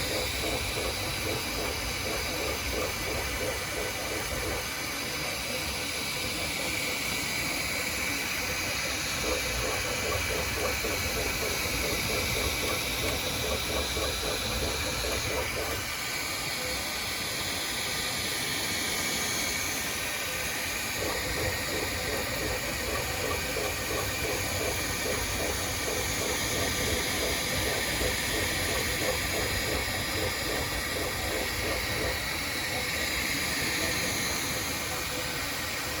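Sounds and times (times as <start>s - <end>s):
cooling fans whooshing: 0.0s - 18.6s, 19.2s - 36.0s.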